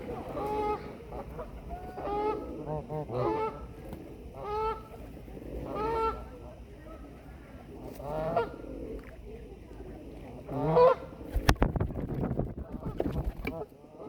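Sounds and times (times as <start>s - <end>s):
waterfowl calling: 0.0s - 3.8s, 4.4s - 5.0s, 5.6s - 6.3s, 10.5s - 11.2s.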